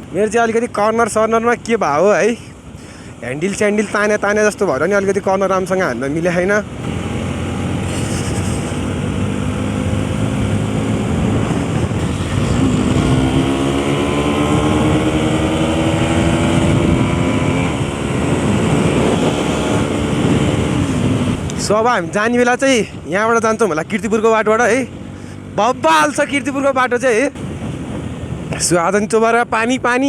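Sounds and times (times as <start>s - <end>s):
motorcycle engine accelerating: 6.8s - 21.6s.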